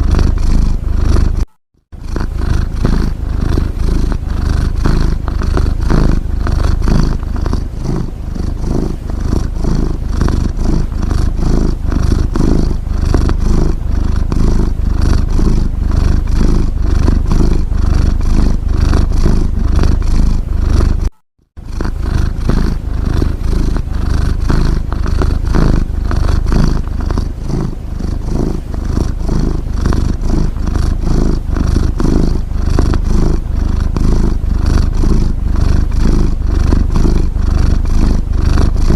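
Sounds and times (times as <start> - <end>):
cat purring: 0.0 - 38.9.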